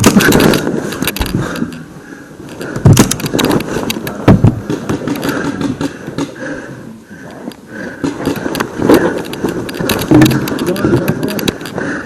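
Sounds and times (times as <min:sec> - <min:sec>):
small clicks: 0:07.2 - 0:11.8
rustling: 0:07.3 - 0:12.0.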